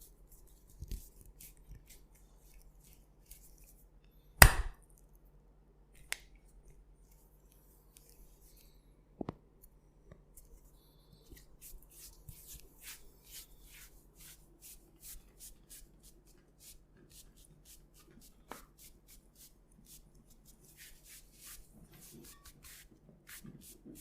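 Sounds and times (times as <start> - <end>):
loud sharp smack: 4.4 - 4.8
crackly rubbing strokes: 10.4 - 24.0
hands rubbing through hair: 11.4 - 24.0.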